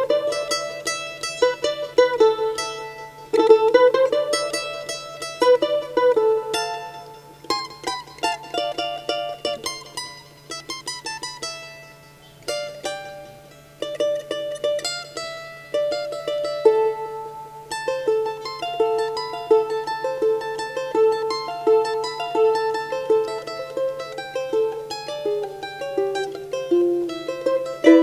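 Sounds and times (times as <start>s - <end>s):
charango melody: 0.0s - 28.0s
faint low hum: 0.0s - 28.0s.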